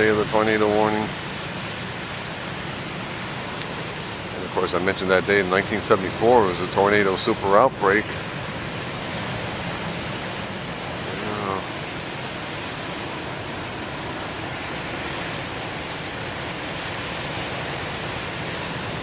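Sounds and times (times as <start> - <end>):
ocean surf roar: 0.0 - 19.0
faint voice: 11.1 - 11.7.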